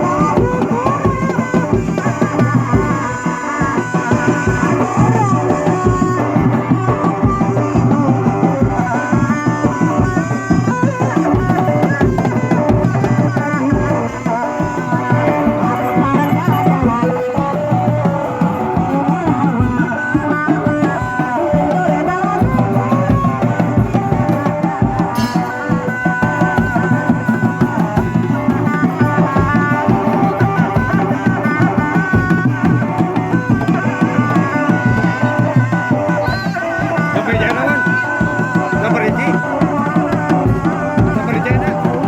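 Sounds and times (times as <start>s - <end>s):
drums beating fast rhythm: 0.0s - 42.0s
wavering ornamented melody: 10.3s - 23.8s.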